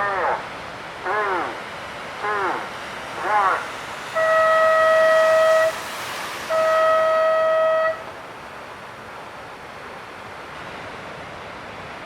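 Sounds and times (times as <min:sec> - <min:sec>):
steady background hiss: 0:00.0 - 0:12.0
contest horn blast: 0:04.1 - 0:08.1.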